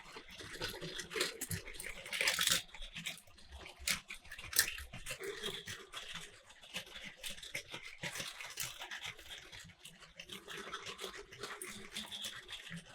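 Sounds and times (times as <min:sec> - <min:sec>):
toy train motor whirring: 0:01.8 - 0:03.2.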